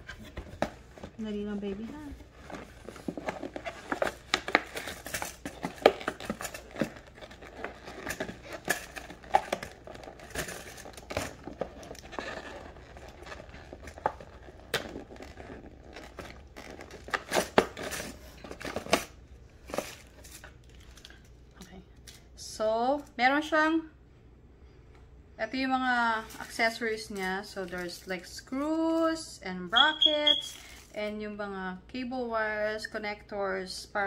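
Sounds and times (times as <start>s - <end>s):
packaging crinkling and rustling: 0.0s - 21.4s, 26.2s - 29.2s.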